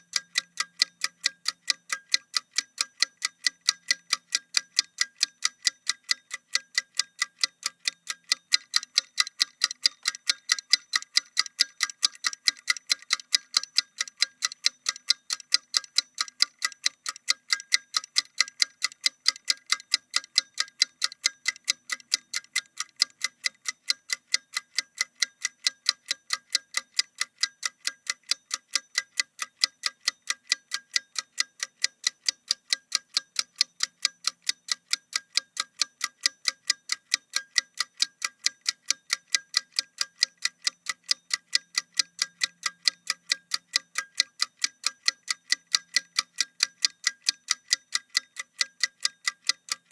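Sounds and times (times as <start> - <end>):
clock ticking: 0.0 - 49.9.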